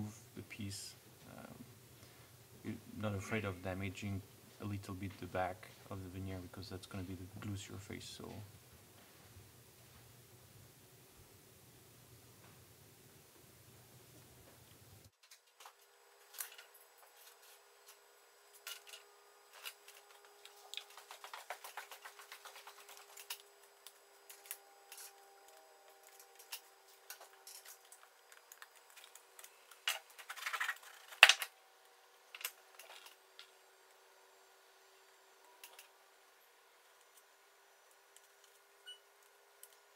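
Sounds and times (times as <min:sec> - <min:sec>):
quick scratchy ticks: 0:20.4 - 0:23.5.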